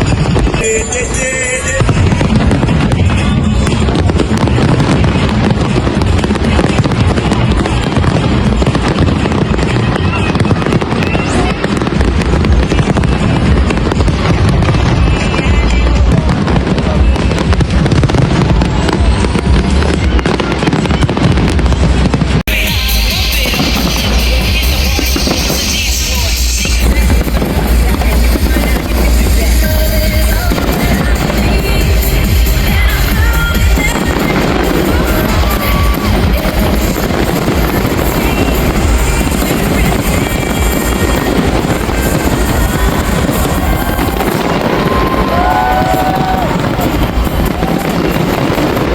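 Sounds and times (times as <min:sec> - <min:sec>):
firework whistle: 0:00.0 - 0:13.1, 0:22.5 - 0:48.9
fireworks bursting and crackling: 0:00.0 - 0:48.9
loud music: 0:00.0 - 0:48.9
soundtrack music: 0:22.5 - 0:45.7.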